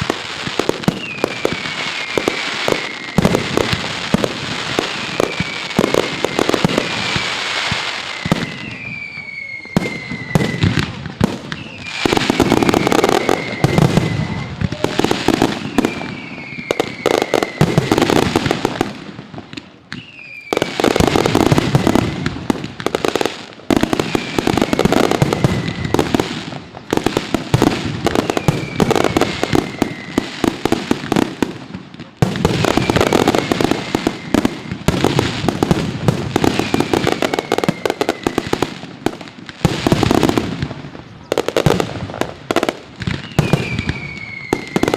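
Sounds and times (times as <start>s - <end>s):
firecracker cracks and bangs: 0.0s - 44.9s
falling whistle: 0.9s - 3.4s, 8.1s - 10.7s, 11.5s - 18.1s, 20.0s - 20.9s, 24.0s - 26.2s, 28.2s - 30.3s, 32.7s - 34.8s, 36.5s - 38.5s, 43.2s - 44.9s.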